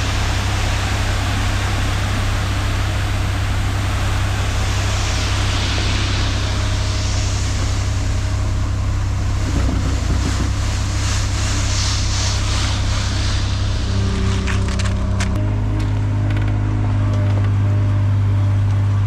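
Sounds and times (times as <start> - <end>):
heavy equipment engine droning: 0.0 - 19.0.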